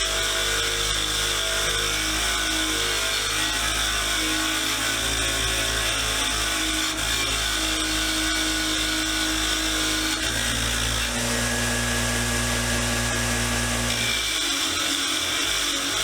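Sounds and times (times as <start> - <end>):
power tool motor running: 4.9 - 16.0.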